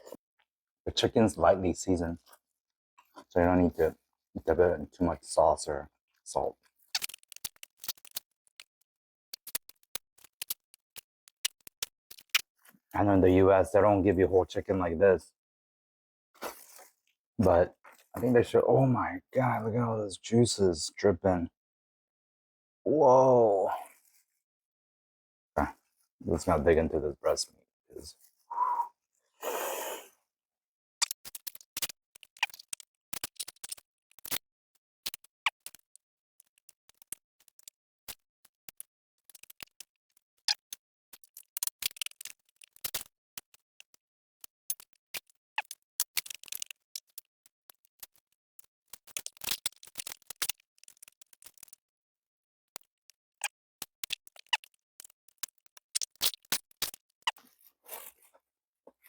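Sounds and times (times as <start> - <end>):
fried chicken being chewed: 6.9 - 12.7, 31.0 - 34.4, 35.0 - 44.0, 44.7 - 48.3, 48.9 - 51.8, 53.8 - 58.2.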